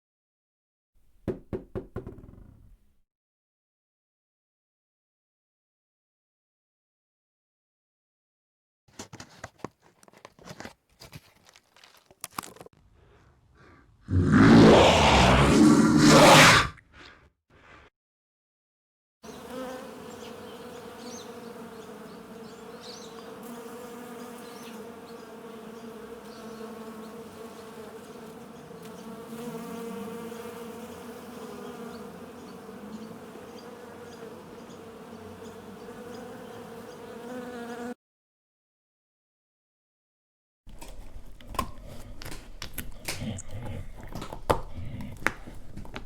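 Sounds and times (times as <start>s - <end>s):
insect buzzing: 19.2s - 38.0s.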